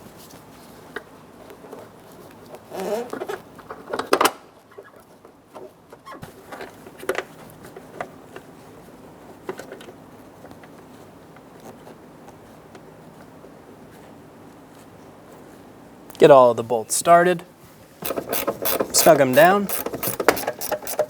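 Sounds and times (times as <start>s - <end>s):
bolts and tools clicking: 18.0s - 21.0s.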